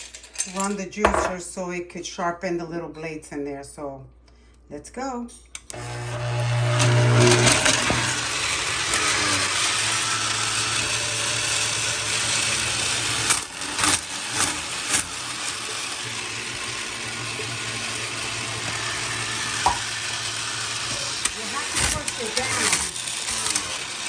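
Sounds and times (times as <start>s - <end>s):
ice crunching in juicer: 5.7s - 24.0s
juicer motor hum: 5.7s - 24.0s.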